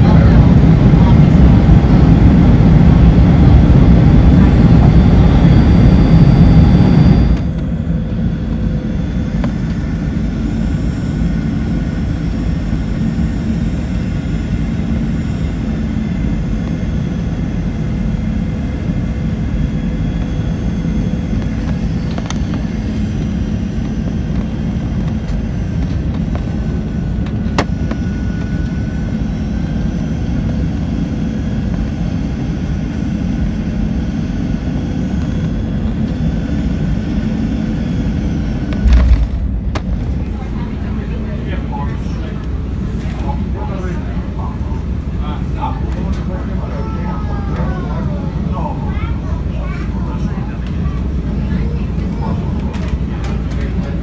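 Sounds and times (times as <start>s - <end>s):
airliner cabin engine rumble: 0.0s - 54.0s.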